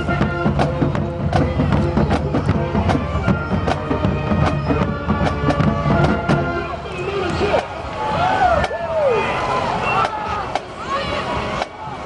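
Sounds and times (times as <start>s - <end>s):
held horn notes: 0.0s - 7.8s
drums beating: 0.0s - 9.2s, 9.8s - 12.0s.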